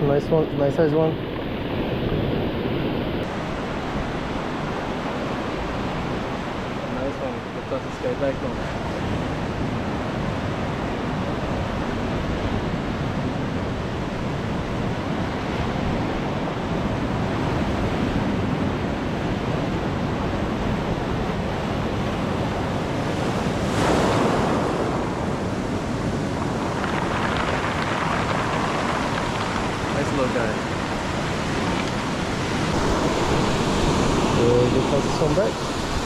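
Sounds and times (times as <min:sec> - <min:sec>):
ocean surf breaking: 0:00.0 - 0:36.0
wind buffeting microphone: 0:08.4 - 0:36.0.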